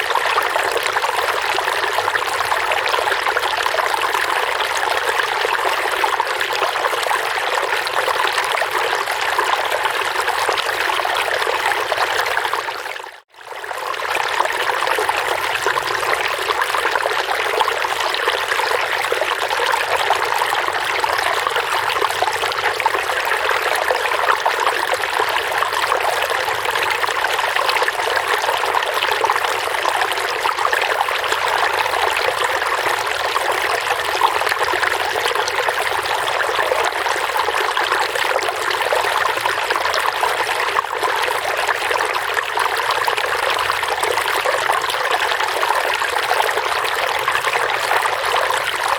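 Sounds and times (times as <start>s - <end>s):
water trickling and babbling: 0.0s - 48.9s.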